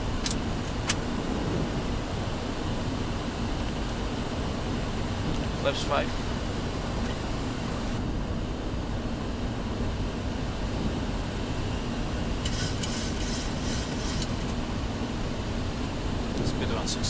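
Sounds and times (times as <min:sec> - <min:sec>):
airflow and engine noise: 0:00.0 - 0:17.0
crackly hiss: 0:12.4 - 0:14.6.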